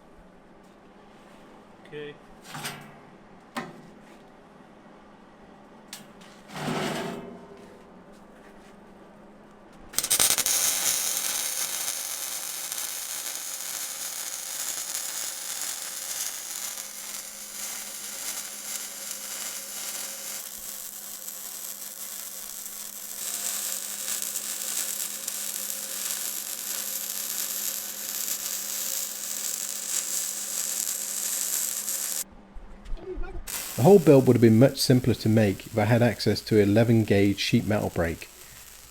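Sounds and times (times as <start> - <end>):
welder crackling hiss: 10.0 - 32.2, 33.5 - 38.9.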